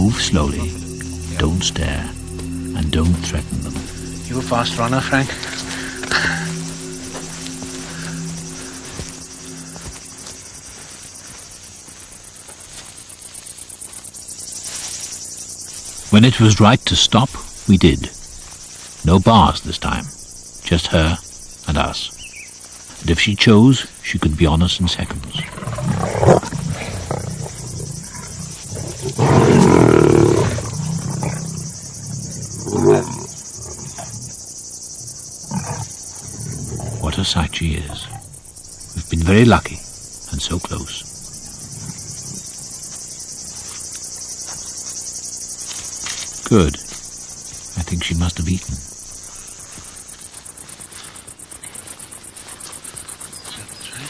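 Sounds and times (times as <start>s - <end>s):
lioness calling: 0.0s - 10.4s, 23.4s - 34.4s, 35.0s - 42.9s
insects chirping: 0.0s - 54.0s.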